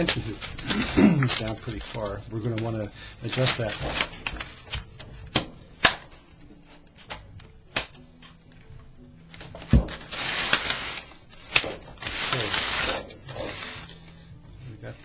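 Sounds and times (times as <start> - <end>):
scraping and rubbing: 0.0 - 5.4, 9.4 - 15.0.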